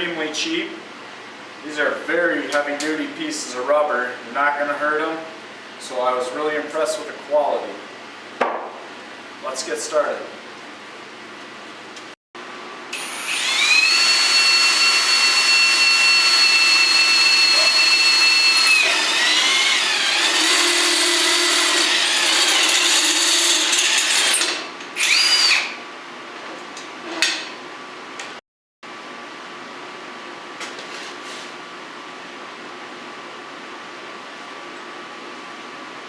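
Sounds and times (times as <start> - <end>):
electric drill whining: 13.0 - 25.8.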